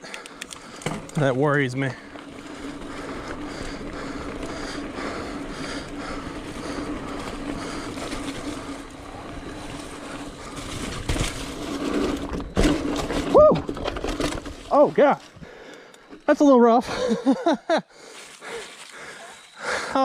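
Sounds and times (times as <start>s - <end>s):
bike tyres rumbling on dirt: 0.4s - 17.4s
bike hitting ground knocks: 10.9s - 11.6s, 12.2s - 14.7s.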